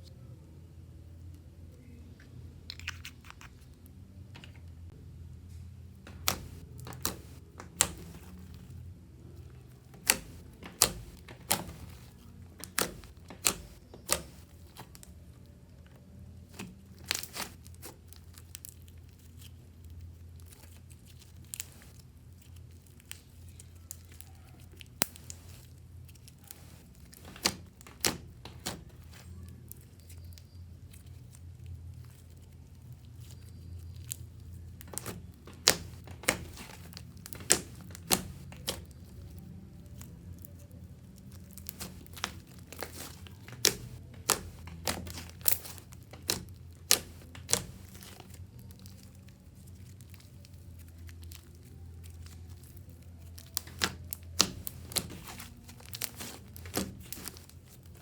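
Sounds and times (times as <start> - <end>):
slime popping and clicking: 6.1 - 8.7, 9.6 - 15.1, 16.5 - 17.9, 34.8 - 39.4, 41.2 - 49.1, 53.3 - 58.0
plastic bag crinkling: 6.1 - 58.0.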